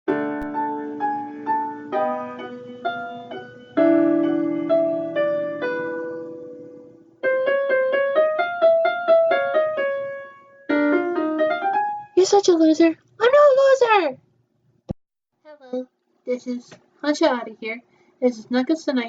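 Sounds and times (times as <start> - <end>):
piano intro music: 0.1 - 12.2.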